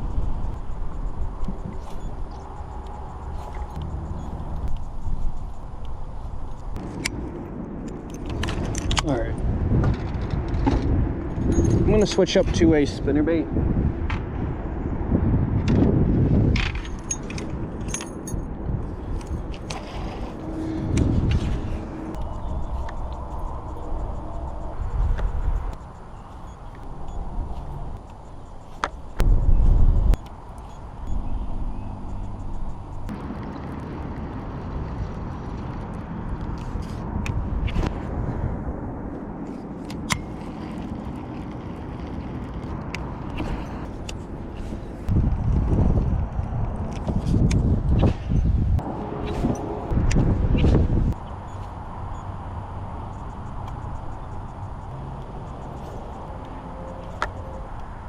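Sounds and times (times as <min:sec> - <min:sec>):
wind rumble on microphone: 0:00.0 - 0:58.0
fishing tackle clicking and jingling: 0:11.4 - 0:12.4, 0:16.6 - 0:18.5.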